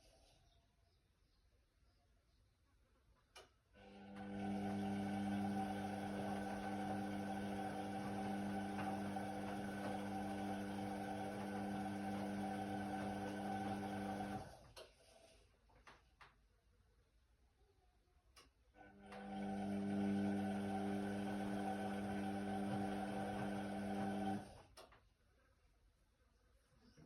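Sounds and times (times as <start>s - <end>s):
washer-dryer electric hum: 3.8s - 14.8s, 18.8s - 24.9s.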